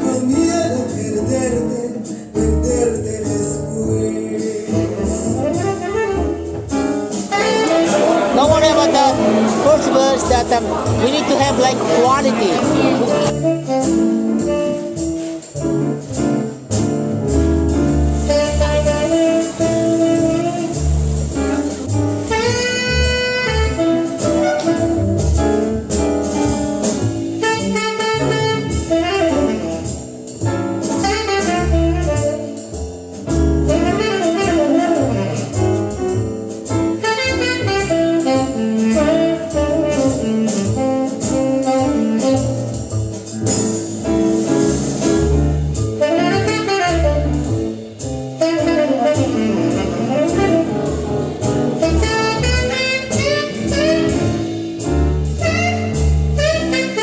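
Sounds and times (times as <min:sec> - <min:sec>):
instrumental bolero over loudspeaker: 0:07.3 - 0:15.8, 0:45.6 - 0:57.0.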